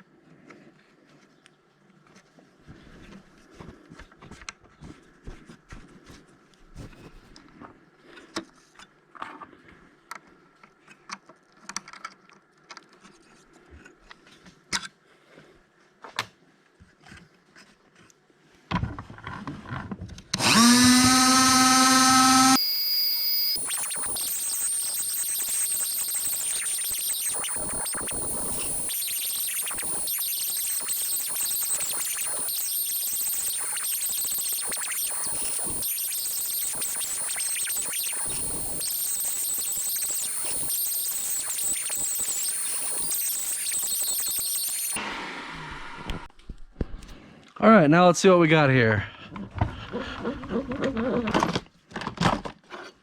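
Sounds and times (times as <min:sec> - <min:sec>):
milling cutter cutting metal: 0:20.4 - 0:44.9
milling machine motor whine: 0:20.4 - 0:46.3.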